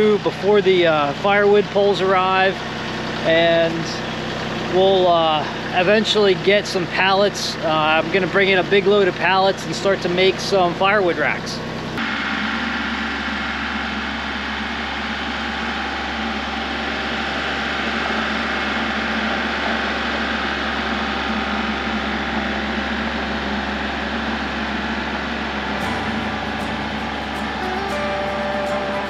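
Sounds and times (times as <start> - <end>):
diesel tractor engine running: 0.0 - 29.0.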